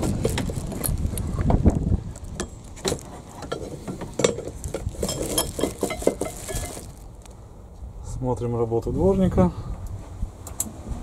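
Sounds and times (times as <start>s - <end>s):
metal tools clinking: 3.5s - 7.0s.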